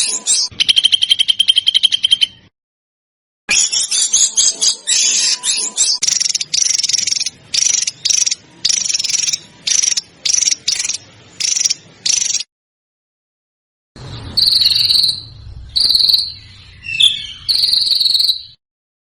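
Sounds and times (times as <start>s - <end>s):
songbird chattering: 0.4s - 2.5s, 6.0s - 12.5s, 14.1s - 18.6s
harsh rasping bird calls: 3.5s - 12.5s, 14.0s - 18.6s.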